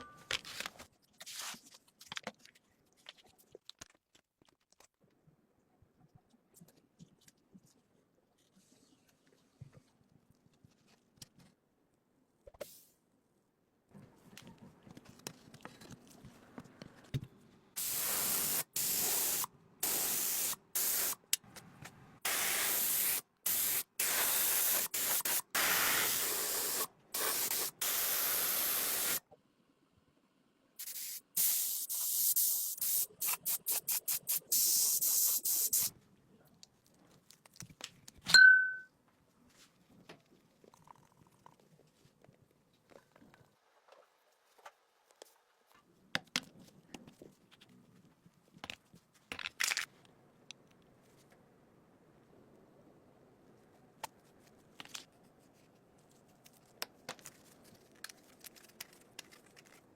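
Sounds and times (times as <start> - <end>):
hissing bursts of compressed air: 17.8 - 21.2, 22.2 - 29.2, 30.8 - 35.9.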